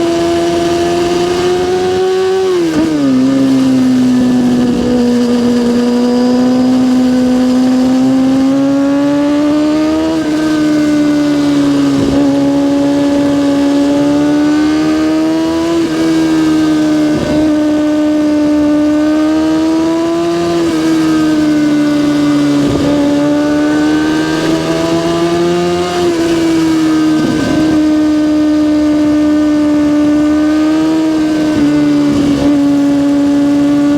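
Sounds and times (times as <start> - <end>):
motorcycle engine at high revs: 0.0 - 33.9.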